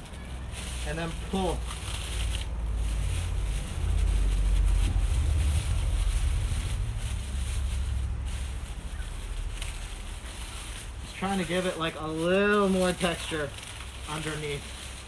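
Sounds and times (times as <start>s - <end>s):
wind buffeting microphone: 2.6s - 11.1s.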